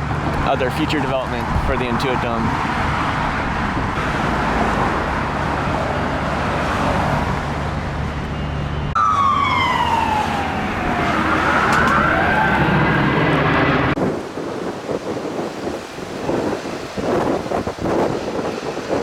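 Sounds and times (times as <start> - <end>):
street traffic: 0.0 - 19.0
emergency siren wailing: 3.1 - 14.0.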